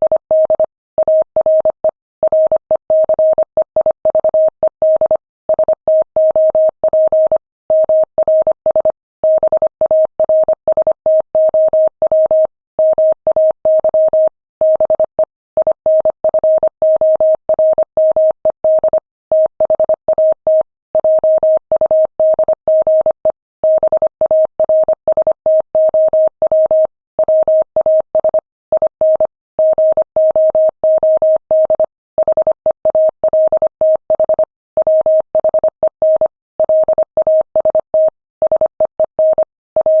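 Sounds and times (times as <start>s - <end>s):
morse code tone: 25.8s - 40.0s.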